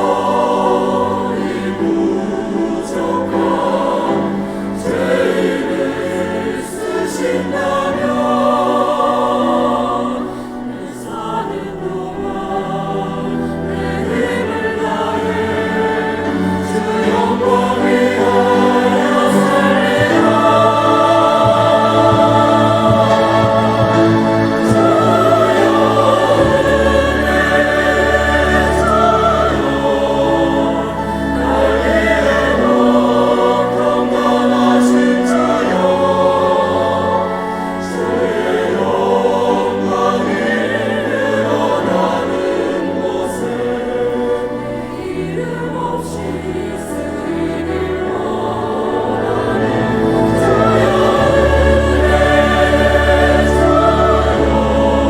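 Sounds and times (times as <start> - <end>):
choir singing in harmony: 0.0 - 55.0.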